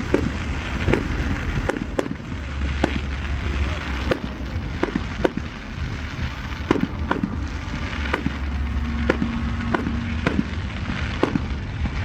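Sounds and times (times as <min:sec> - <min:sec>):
firework bangs: 0:00.0 - 0:12.0
low rumble: 0:00.0 - 0:12.0.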